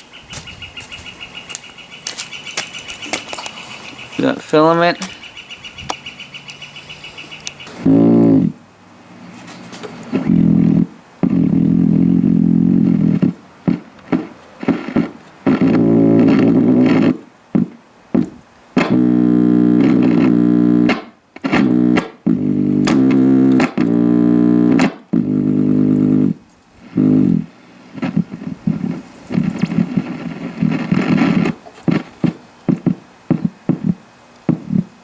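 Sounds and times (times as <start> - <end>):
sharp crackling clicks: 1.4 - 5.2, 9.7 - 11.6, 12.8 - 25.2, 25.9 - 35.0
music from a radio speaker: 12.9 - 17.7, 27.9 - 34.9.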